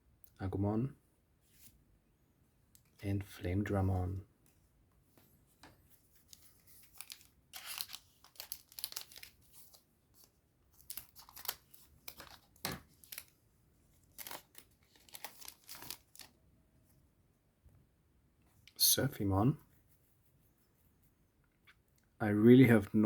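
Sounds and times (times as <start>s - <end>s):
wrapper tearing and crinkling: 6.3s - 13.4s, 14.1s - 16.3s.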